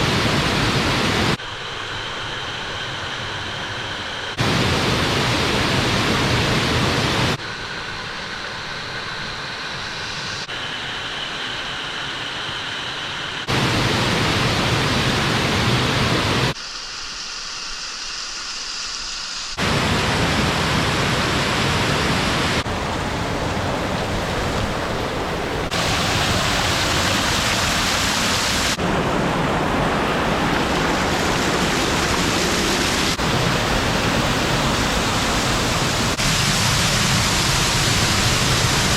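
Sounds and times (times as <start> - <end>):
waterfall rushing: 19.6 - 38.9.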